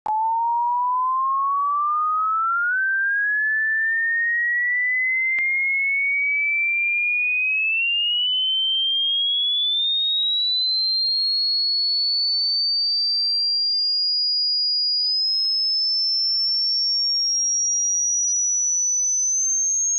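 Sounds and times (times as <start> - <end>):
rising sine tone sweep: 0.1 - 5.5, 12.2 - 19.9.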